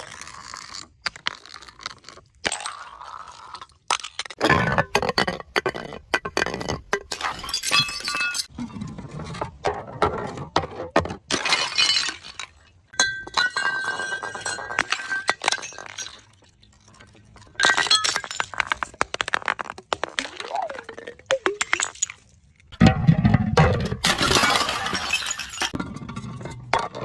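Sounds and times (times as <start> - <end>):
glass bottles breaking: 7.1 - 8.5, 11.3 - 25.8
glass shards clinking: 24.0 - 25.8.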